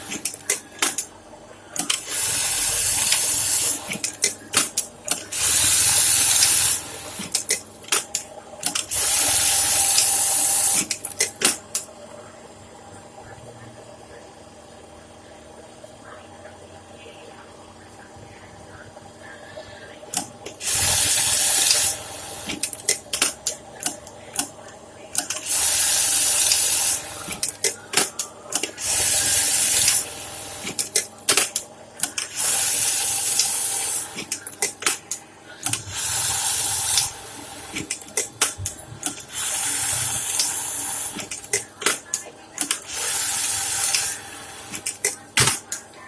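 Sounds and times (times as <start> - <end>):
sewing machine running: 0.0 - 1.1, 1.8 - 11.8, 20.2 - 24.5, 25.2 - 45.8.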